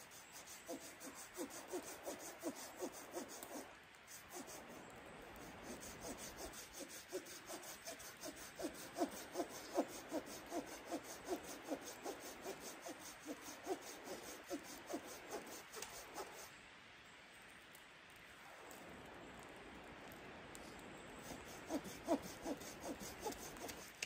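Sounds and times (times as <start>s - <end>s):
hand saw rasping through wood: 0.0s - 4.6s, 5.6s - 16.5s, 21.2s - 24.0s.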